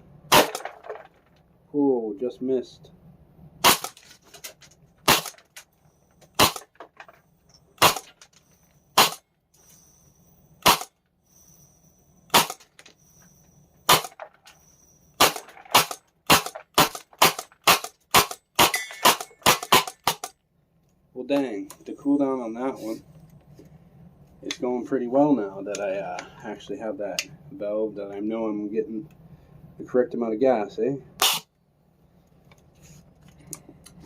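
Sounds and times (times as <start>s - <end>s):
airsoft gun shots: 0.3s - 0.8s, 3.6s - 4.0s, 5.0s - 5.4s, 6.4s - 6.7s, 7.8s - 8.1s, 9.0s - 9.2s, 10.6s - 10.9s, 12.3s - 12.6s, 13.9s - 14.2s, 15.2s - 20.3s, 31.2s - 31.5s.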